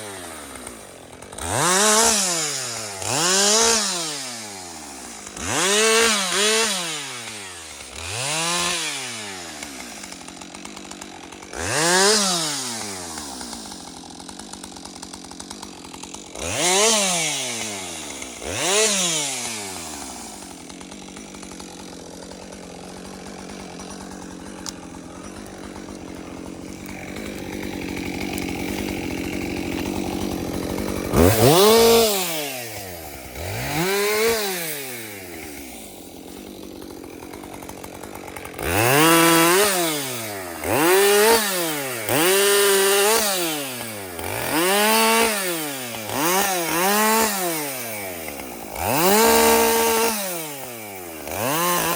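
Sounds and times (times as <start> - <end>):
chainsaw engine revving and idling: 0.0 - 51.9.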